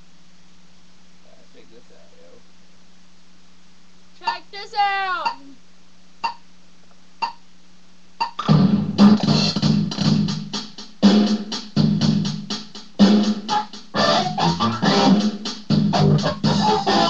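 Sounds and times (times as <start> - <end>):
steady low hum: 0.0 - 17.0
count-in clicks: 4.2 - 4.5, 5.2 - 5.5, 6.2 - 6.4, 7.2 - 7.4
drum-machine beat: 4.2 - 5.5, 6.2 - 6.5, 7.2 - 7.4, 8.2 - 17.0.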